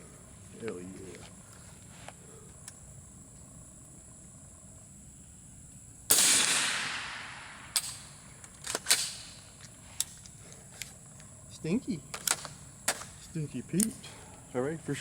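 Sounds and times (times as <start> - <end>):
suppressed rifle shot: 6.1 - 9.5.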